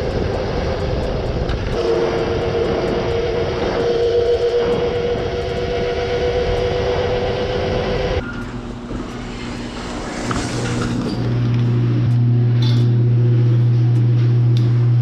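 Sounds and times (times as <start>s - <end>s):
electric dirt bike motor whining: 0.0s - 8.6s
low steady hum: 0.0s - 15.0s.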